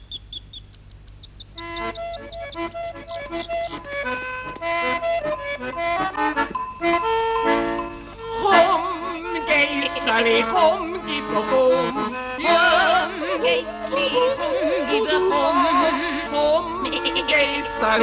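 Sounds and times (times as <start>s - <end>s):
vibrato melody over held chords: 1.5s - 9.7s.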